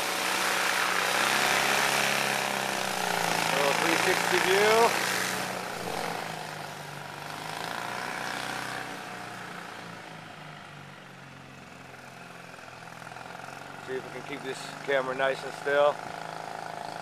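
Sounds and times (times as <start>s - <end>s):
light aircraft engine droning: 0.0s - 17.0s
low hum: 1.6s - 7.1s.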